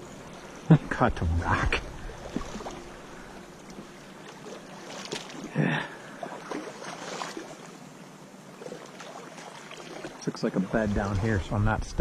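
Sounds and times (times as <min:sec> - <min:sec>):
stream water rushing: 0:00.0 - 0:12.0
faint small splashes: 0:01.9 - 0:07.8, 0:08.5 - 0:11.7.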